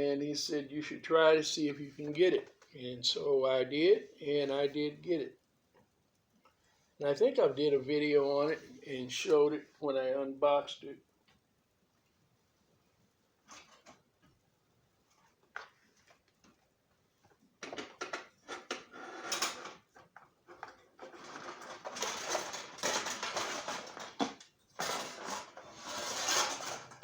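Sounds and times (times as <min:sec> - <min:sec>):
toy train track clattering: 0:20.5 - 0:27.0.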